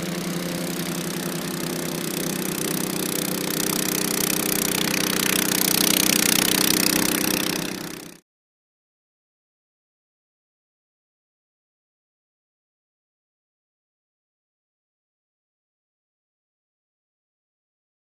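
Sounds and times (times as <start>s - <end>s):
snowblower engine running: 0.0s - 8.2s.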